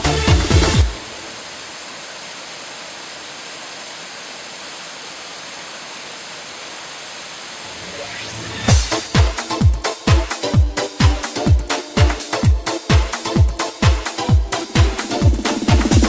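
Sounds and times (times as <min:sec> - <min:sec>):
electronic background music: 0:00.0 - 0:01.3, 0:07.9 - 0:16.0
waterfall rushing: 0:00.0 - 0:16.0.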